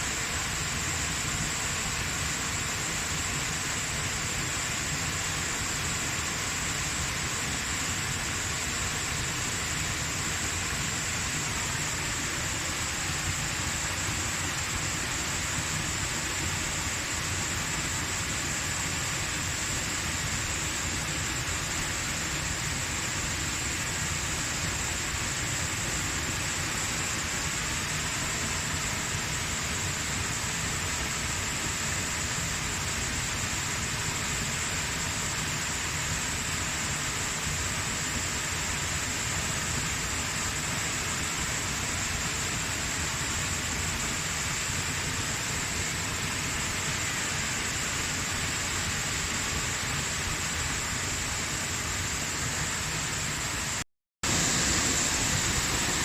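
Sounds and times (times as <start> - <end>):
waterfall rushing: 54.3 - 56.0.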